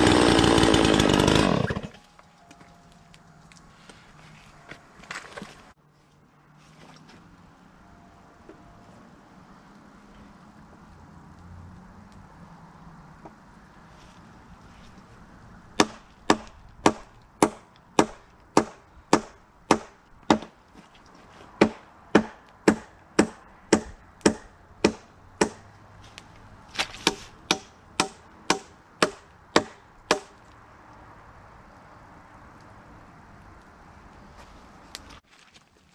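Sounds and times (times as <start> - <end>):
sharp strikes on wood: 15.8 - 20.6, 21.6 - 25.6, 26.8 - 30.4.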